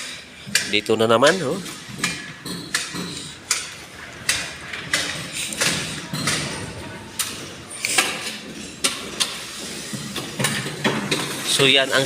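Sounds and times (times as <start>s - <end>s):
sharp knocks: 1.8s - 9.4s.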